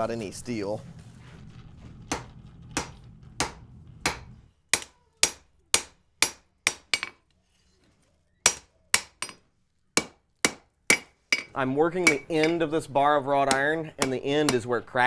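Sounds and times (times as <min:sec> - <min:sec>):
low hum: 0:00.3 - 0:04.5
hammer blows on an anvil: 0:02.1 - 0:07.2, 0:08.5 - 0:09.4, 0:10.0 - 0:12.8, 0:13.4 - 0:15.0.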